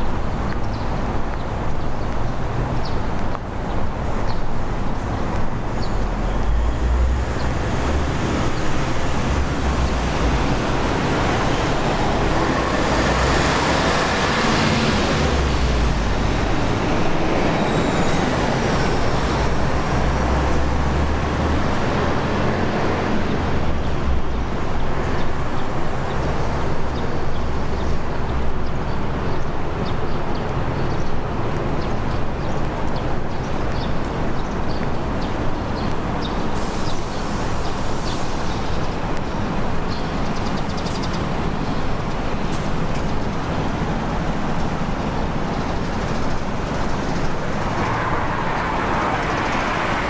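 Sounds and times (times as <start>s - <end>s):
road traffic noise: 0.0s - 50.0s
vehicle passing: 6.0s - 29.2s, 45.8s - 50.0s
high falling squeal: 16.2s - 19.4s.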